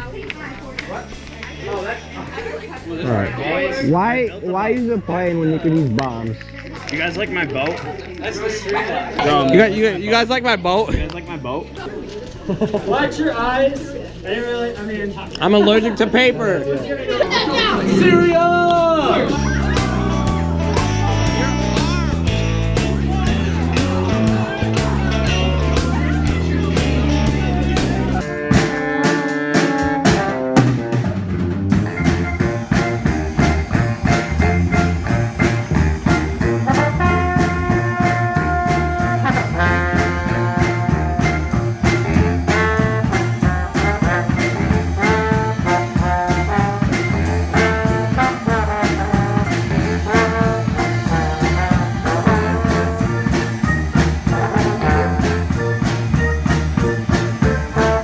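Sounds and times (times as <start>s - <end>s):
drum kit beat: 17.1s - 58.0s
swing jazz with brass: 17.1s - 58.0s.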